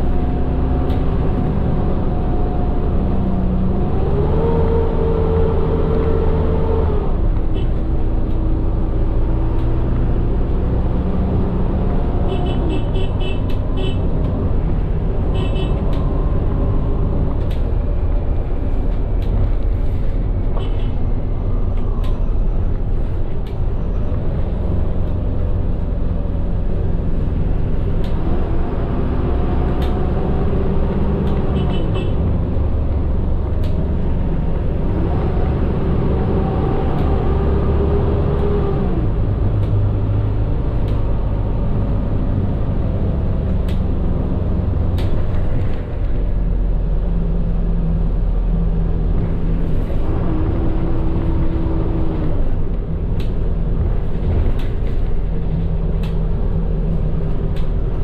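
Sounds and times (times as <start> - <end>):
bus engine rumble: 0.0 - 58.0.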